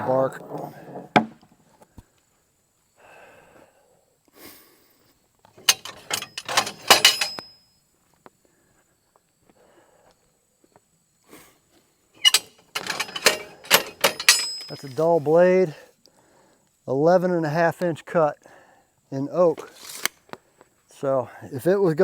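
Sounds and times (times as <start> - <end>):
metallic clanking and knocking: 5.6 - 7.5, 12.2 - 15.2.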